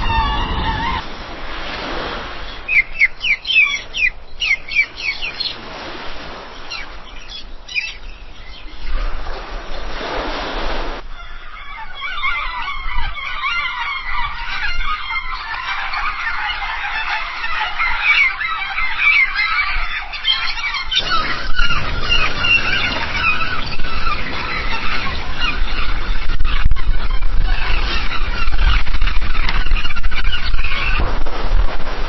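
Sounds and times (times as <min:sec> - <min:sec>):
seagulls calling: 0:00.0 - 0:09.9, 0:11.0 - 0:31.6
waves breaking: 0:00.0 - 0:11.1, 0:15.8 - 0:32.0.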